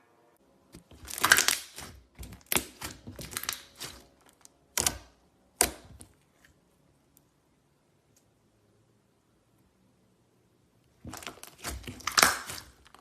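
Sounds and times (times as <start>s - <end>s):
slime squishing and popping: 0.8s - 6.1s, 11.0s - 13.0s.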